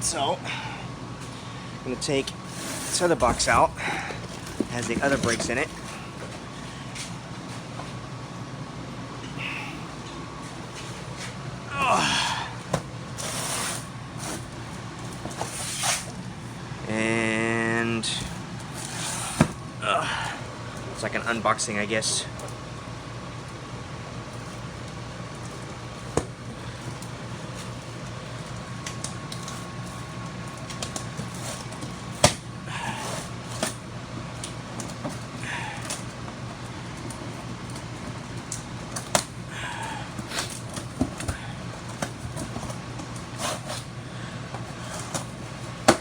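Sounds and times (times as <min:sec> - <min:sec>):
steady low hum: 0:00.0 - 0:46.0
cardboard and packaging rustling: 0:02.4 - 0:08.0, 0:12.6 - 0:16.6, 0:18.1 - 0:19.7, 0:24.3 - 0:46.0.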